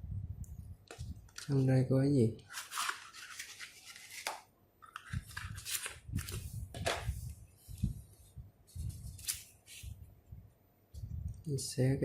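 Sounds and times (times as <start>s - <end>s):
paper packaging rustling: 0.9s - 1.7s, 2.4s - 7.3s, 8.7s - 9.9s.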